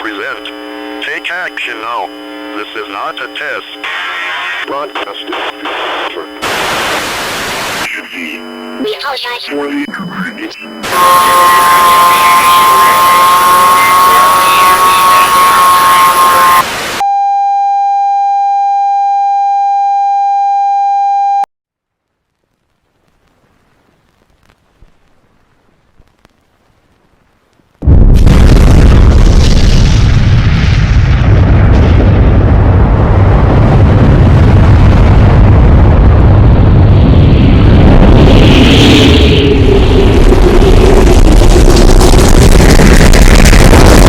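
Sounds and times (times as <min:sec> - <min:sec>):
distorted rumbling noise: 0:00.0 - 0:17.0, 0:21.8 - 0:44.0
loud static with high whines: 0:00.0 - 0:17.1, 0:21.8 - 0:44.0
steady electronic tone: 0:00.0 - 0:17.1, 0:36.3 - 0:44.0.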